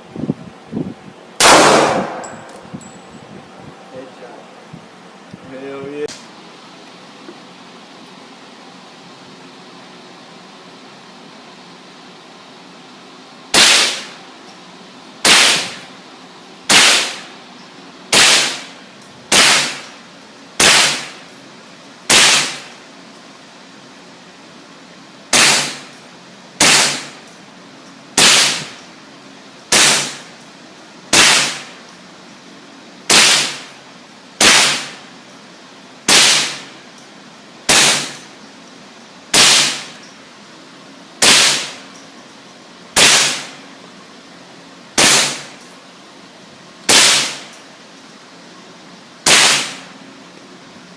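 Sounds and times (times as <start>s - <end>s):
steady background hiss: 0.0s - 50.9s
gunshots: 1.4s - 2.4s, 13.6s - 14.1s, 15.2s - 15.8s, 16.7s - 17.3s, 18.1s - 18.7s, 19.3s - 19.8s, 20.6s - 21.2s, 22.1s - 22.7s, 25.3s - 25.9s, 26.6s - 27.2s, 28.2s - 28.7s, 29.7s - 30.2s, 31.1s - 31.7s, 33.1s - 33.7s, 34.4s - 35.0s, 36.1s - 36.7s, 37.7s - 38.2s, 39.3s - 39.9s, 41.2s - 41.8s, 43.0s - 43.5s, 45.0s - 45.5s, 46.9s - 47.5s, 49.3s - 49.9s.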